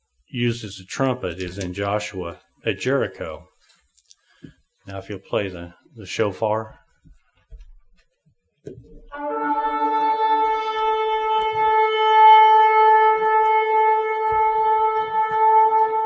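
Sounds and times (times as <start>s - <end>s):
shofar blast: 9.1s - 16.0s.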